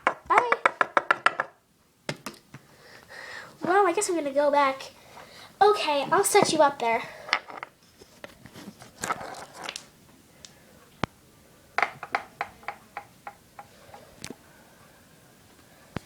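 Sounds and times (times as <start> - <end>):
toys rustling being handled: 5.9 - 9.9.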